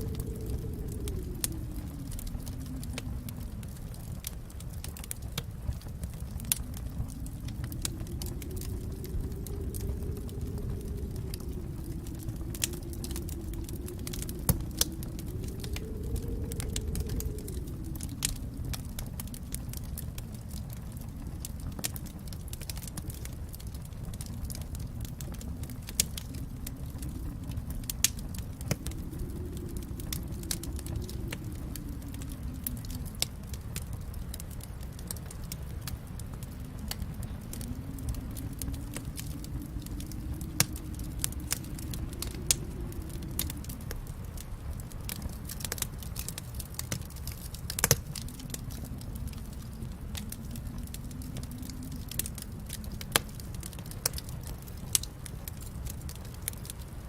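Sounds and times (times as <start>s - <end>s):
fire crackling: 0.0s - 57.0s.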